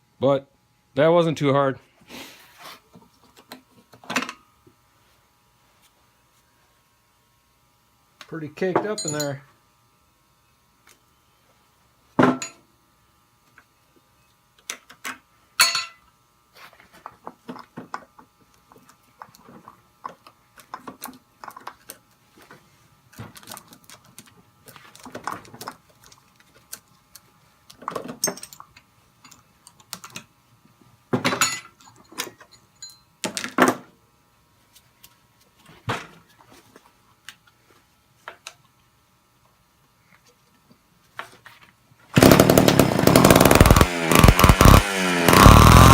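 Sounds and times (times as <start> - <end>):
clicks and knocks of handling parts: 17.0 - 30.3.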